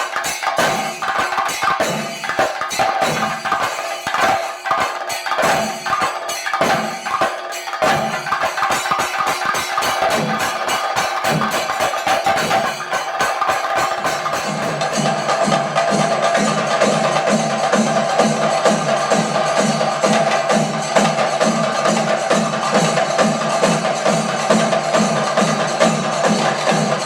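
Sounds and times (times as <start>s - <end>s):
drum stick strokes: 0.0s - 17.8s
hand cymbals ringing: 0.0s - 27.0s.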